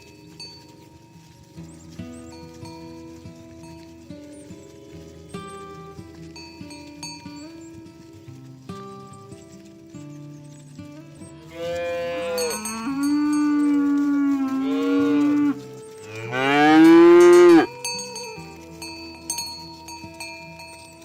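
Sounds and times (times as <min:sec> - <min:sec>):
cattle mooing: 0:11.5 - 0:17.7.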